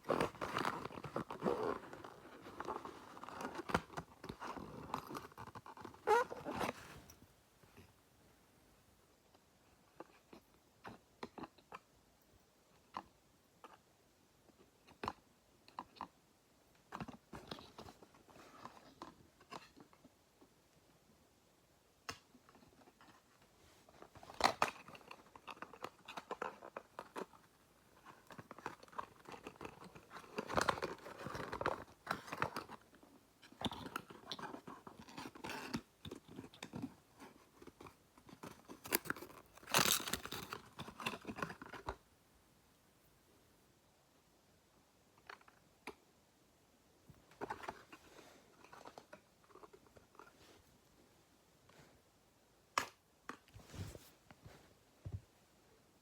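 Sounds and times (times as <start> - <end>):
packaging crinkling and tearing: 38.7 - 41.6.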